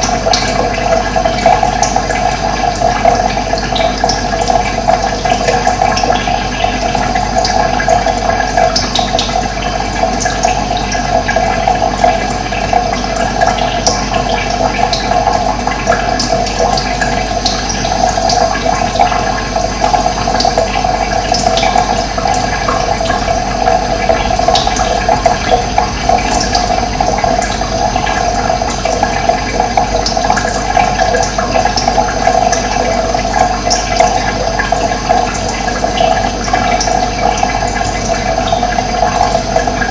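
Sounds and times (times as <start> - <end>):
water rushing: 10.9 - 39.9.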